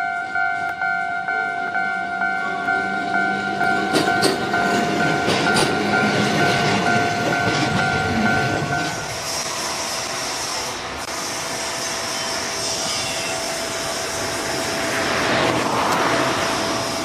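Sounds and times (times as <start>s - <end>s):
steady ringing tone: 0.0s - 10.3s
train wheels clattering over rail joints: 3.7s - 9.2s.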